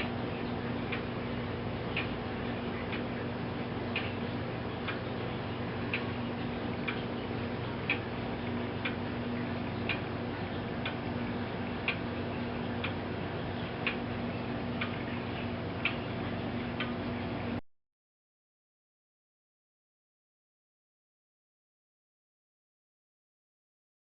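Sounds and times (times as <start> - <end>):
clock ticking: 1.9 - 3.1, 3.8 - 16.0, 16.7 - 17.0.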